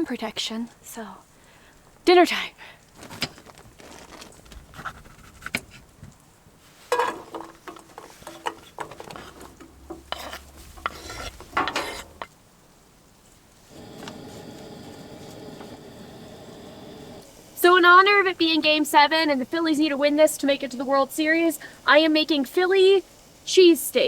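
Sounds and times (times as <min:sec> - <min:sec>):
pots and pans clattering: 0:06.9 - 0:12.3.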